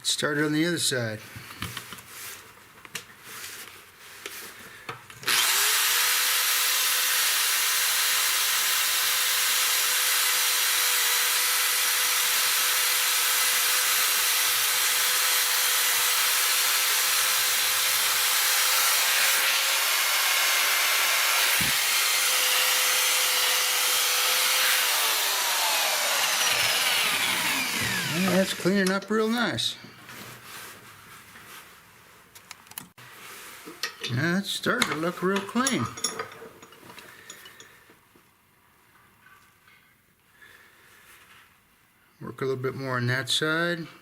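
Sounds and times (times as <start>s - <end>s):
electric drill motor whine: 5.2s - 28.6s
wire brush scratching rusty steel: 23.2s - 29.0s.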